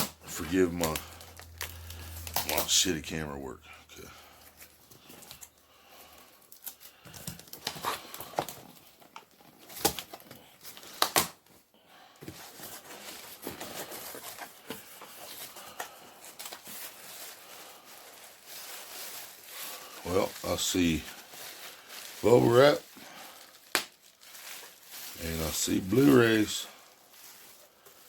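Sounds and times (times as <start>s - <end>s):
cardboard and tape tearing: 0.0s - 2.9s, 6.5s - 11.5s, 12.2s - 28.0s
bubble wrap crinkling: 0.0s - 3.2s, 3.9s - 11.6s, 12.2s - 28.0s.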